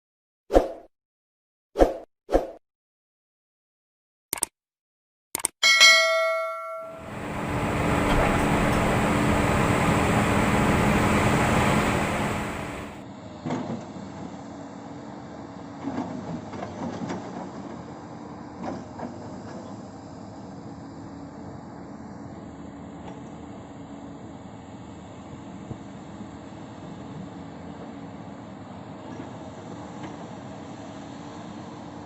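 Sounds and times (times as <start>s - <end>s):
short ringing chime: 5.6s - 7.3s
excavator diesel engine running: 7.0s - 13.0s.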